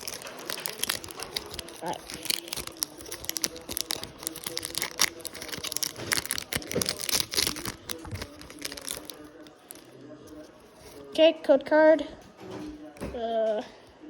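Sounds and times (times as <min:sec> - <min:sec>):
foil wrapper crinkling: 0:00.0 - 0:11.1.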